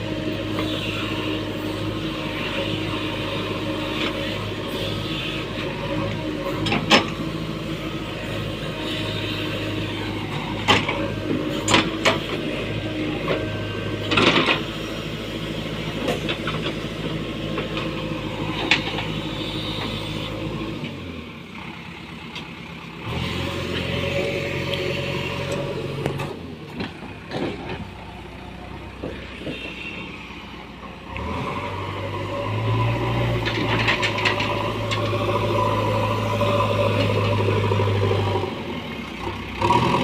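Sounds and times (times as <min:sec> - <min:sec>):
diesel engine running: 0:00.0 - 0:40.0.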